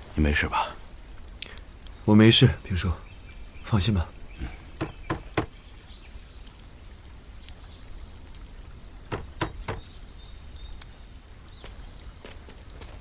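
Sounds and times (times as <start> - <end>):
short sharp knocks: 4.8 - 5.5, 9.1 - 9.9.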